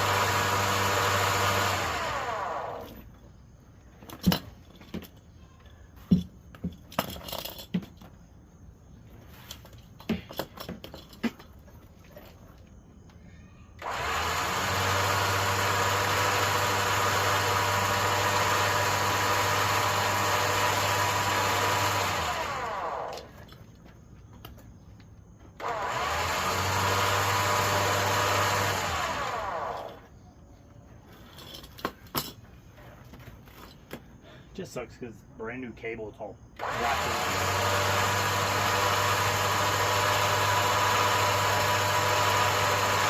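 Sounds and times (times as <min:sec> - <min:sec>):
electric winch motor running: 0:00.0 - 0:03.1, 0:13.8 - 0:23.4, 0:25.6 - 0:30.1, 0:36.6 - 0:43.0.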